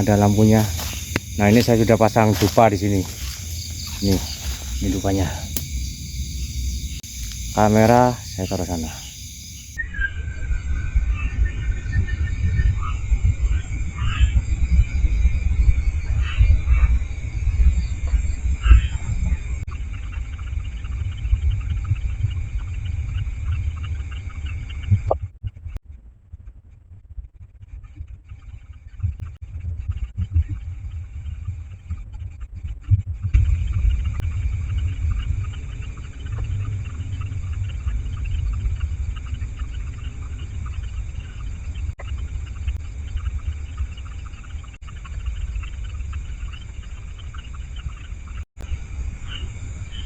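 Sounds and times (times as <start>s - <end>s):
crickets chirring: 0.0s - 9.8s, 33.5s - 50.0s
night creatures chirping: 0.0s - 12.2s
low rumble on microphone: 0.0s - 50.0s.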